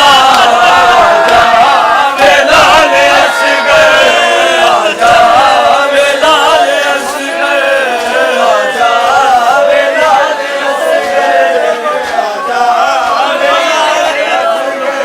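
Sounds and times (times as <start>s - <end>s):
men chanting a mourning lament: 0.0s - 15.0s.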